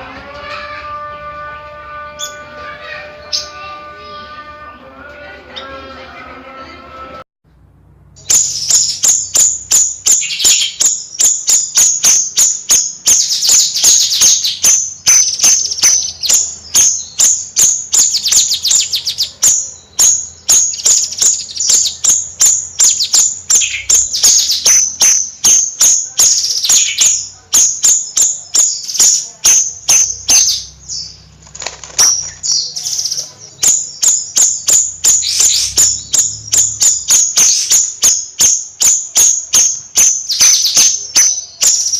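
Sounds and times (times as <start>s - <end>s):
buzzy bird trills: 0.0s - 4.8s, 8.2s - 41.9s
songbird chattering high chirps: 8.2s - 31.3s, 32.0s - 41.9s.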